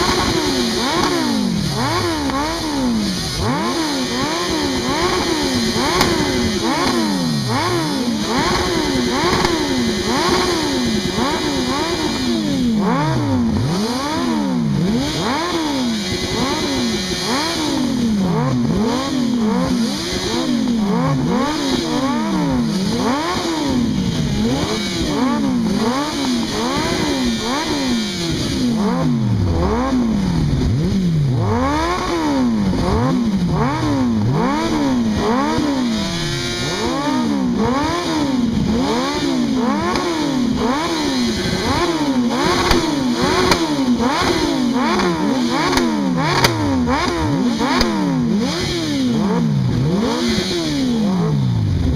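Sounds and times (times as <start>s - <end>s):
vehicle engine revving hard: 0.0s - 51.9s.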